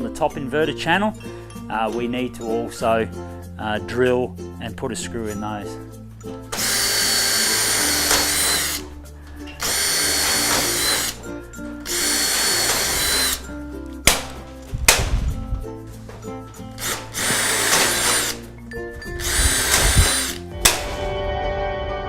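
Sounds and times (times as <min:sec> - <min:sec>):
background music: 0:00.0 - 0:22.0
power drill driving screws into metal: 0:06.5 - 0:08.9, 0:09.5 - 0:11.2, 0:11.8 - 0:14.4, 0:16.8 - 0:18.5, 0:19.1 - 0:21.0
sharp clicks: 0:16.8 - 0:18.4, 0:19.2 - 0:20.9.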